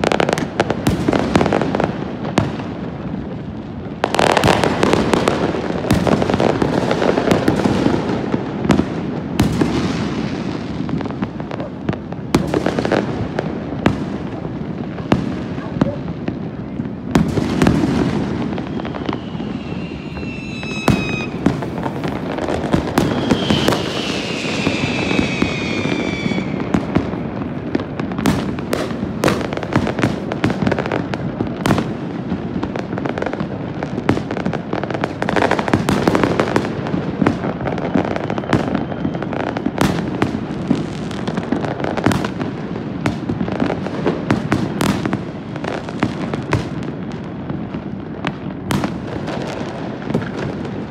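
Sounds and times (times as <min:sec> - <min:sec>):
fireworks bangs and pops: 0:00.0 - 0:50.9
whistling fireworks: 0:00.0 - 0:50.9.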